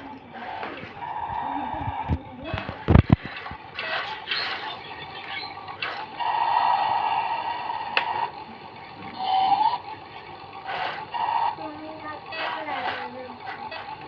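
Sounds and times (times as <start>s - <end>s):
toy electric motor whirring: 0.0s - 14.0s.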